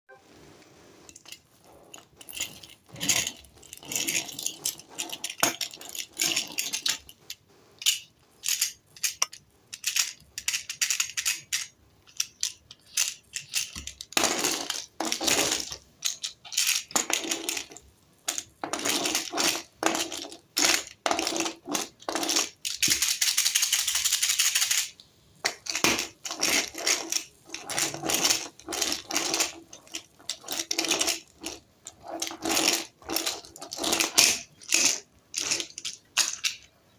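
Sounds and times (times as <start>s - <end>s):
sharp clicks and rattles: 20.8s - 36.8s.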